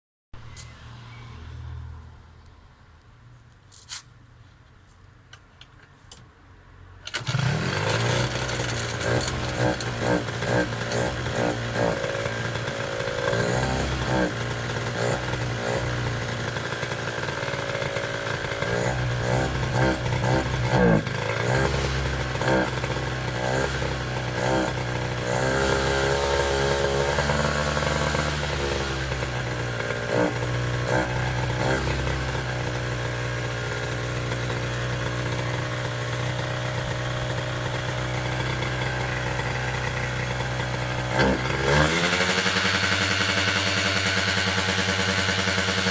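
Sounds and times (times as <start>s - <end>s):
scooter engine starting and revving: 7.1s - 45.9s.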